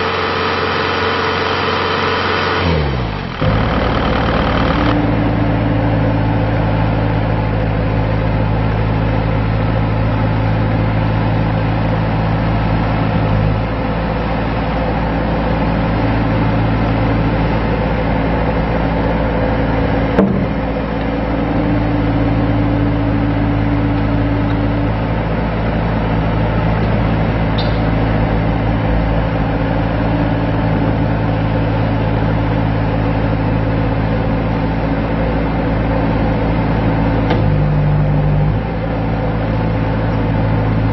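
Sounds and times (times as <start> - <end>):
diesel engine running steadily: 0.0 - 40.9
short knock: 20.2 - 20.6.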